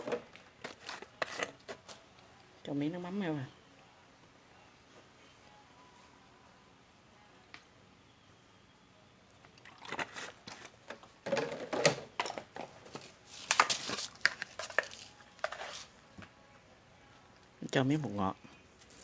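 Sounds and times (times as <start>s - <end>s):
containers and utensil clicking: 13.4s - 15.8s.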